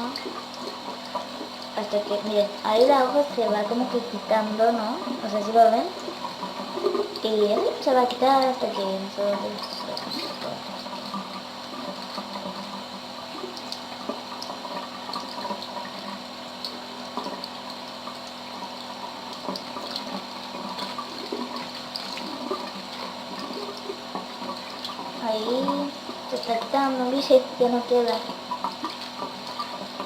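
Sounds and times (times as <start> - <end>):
tap water splashing on paper: 16.6 - 25.8.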